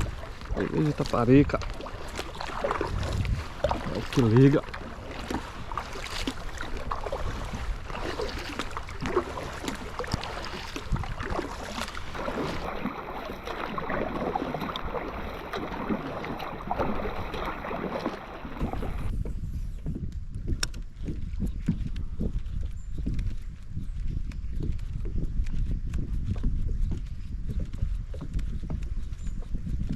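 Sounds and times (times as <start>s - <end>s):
rain splashing and pattering: 0.0s - 19.1s
wind rumbling on microphone: 0.0s - 29.9s.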